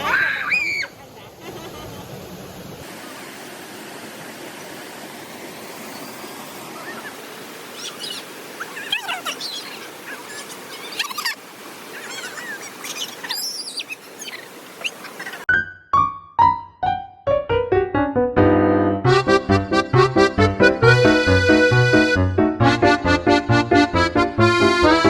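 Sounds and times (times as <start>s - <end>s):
stream water running: 0.0s - 15.5s
birds chirping: 5.2s - 15.5s.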